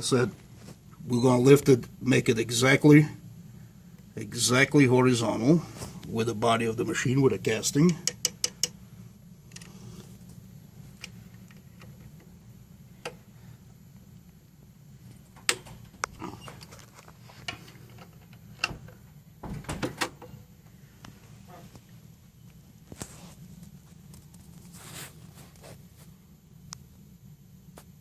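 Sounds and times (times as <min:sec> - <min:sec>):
steady low hum: 0:00.0 - 0:28.0
allen wrench clicks and taps: 0:08.0 - 0:08.8.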